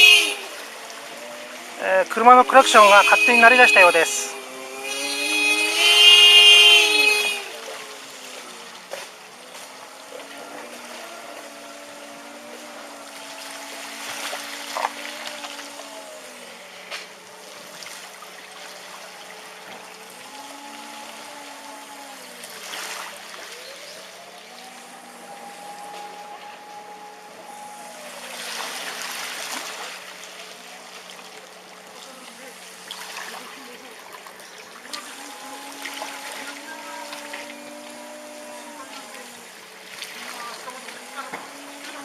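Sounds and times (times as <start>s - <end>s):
car horns sounding: 0.0s - 8.3s, 24.6s - 28.4s
flowing water: 0.0s - 42.0s.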